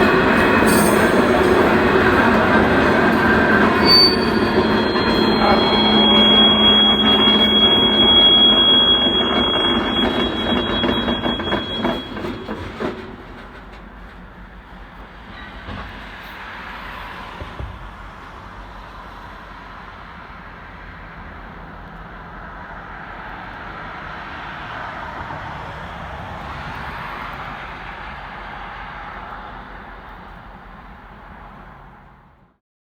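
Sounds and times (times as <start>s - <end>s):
train wheel squeal: 0.0s - 14.3s, 15.1s - 17.4s
freight train rolling: 0.0s - 23.2s.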